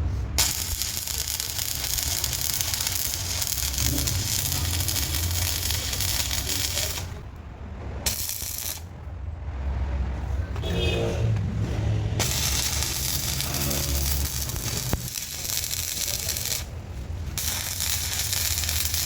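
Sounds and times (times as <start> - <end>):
welding arc crackling and hissing: 0.4 - 7.2, 8.0 - 8.9, 12.2 - 19.0.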